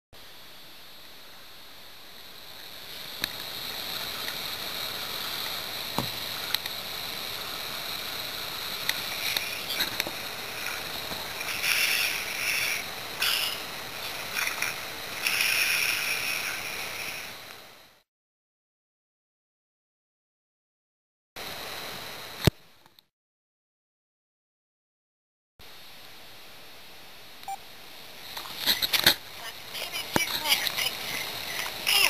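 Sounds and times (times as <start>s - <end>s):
steady hiss: 0.2s - 18.0s, 25.6s - 32.0s.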